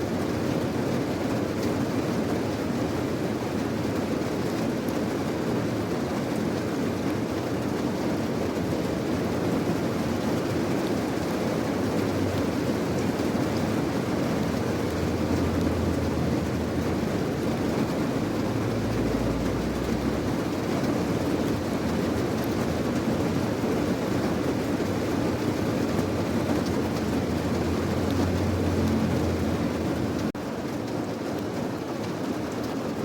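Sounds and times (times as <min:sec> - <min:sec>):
heavy rain: 0:00.0 - 0:33.0
deep low rumble: 0:14.4 - 0:20.6.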